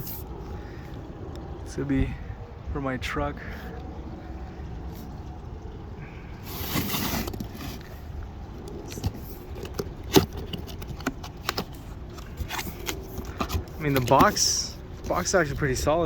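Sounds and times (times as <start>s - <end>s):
cardboard box scraping: 6.4s - 8.1s, 8.8s - 15.3s
cardboard flaps clicking and knocking: 9.0s - 15.1s.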